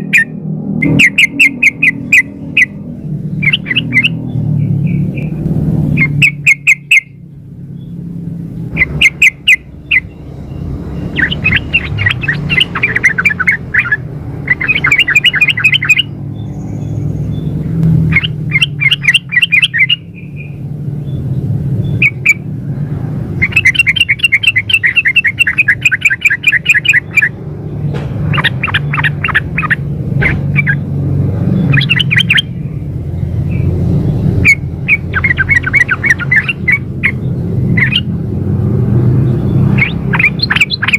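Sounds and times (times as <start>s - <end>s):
bird chattering call: 0.0s - 5.4s, 6.0s - 7.2s, 8.7s - 20.6s, 21.8s - 22.5s, 23.3s - 27.4s, 28.2s - 30.9s, 31.6s - 32.7s, 34.3s - 38.2s, 39.6s - 40.9s.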